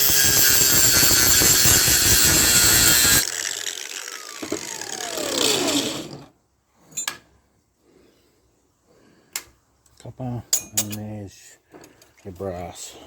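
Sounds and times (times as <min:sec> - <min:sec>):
angle grinder spinning down: 0:00.0 - 0:06.3.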